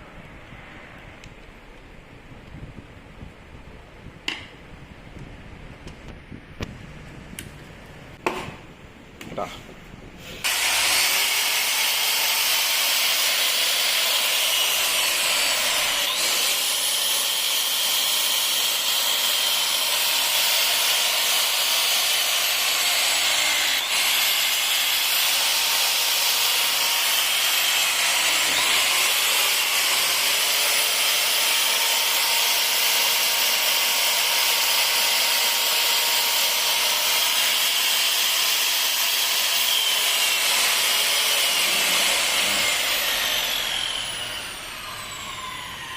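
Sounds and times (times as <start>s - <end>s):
circular saw running: 10.4s - 45.9s.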